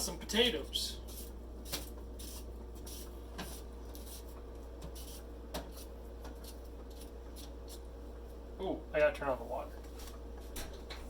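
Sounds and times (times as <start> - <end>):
steady low hum: 0.0 - 11.0
peeler scraping potato: 1.0 - 8.0.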